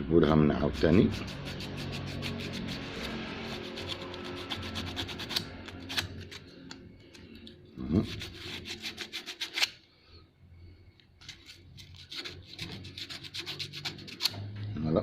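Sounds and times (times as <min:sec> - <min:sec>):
sandpaper rubbing on metal: 0:00.7 - 0:06.0, 0:08.0 - 0:09.7, 0:11.4 - 0:14.3.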